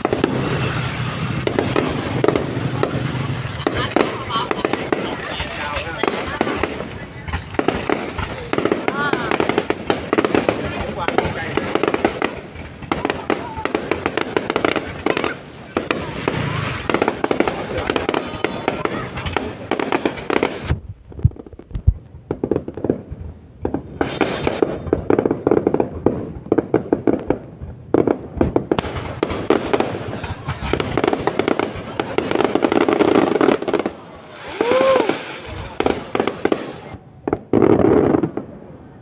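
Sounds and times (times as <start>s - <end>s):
fireworks crackling and banging: 0.0s - 39.0s
firework whistle: 24.0s - 25.0s, 33.4s - 37.2s.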